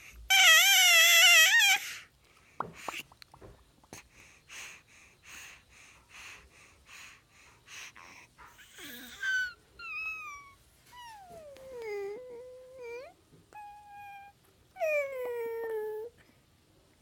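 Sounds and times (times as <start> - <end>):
baby squeaking: 0.3 - 1.9
baby breathy huffs: 3.9 - 9.5.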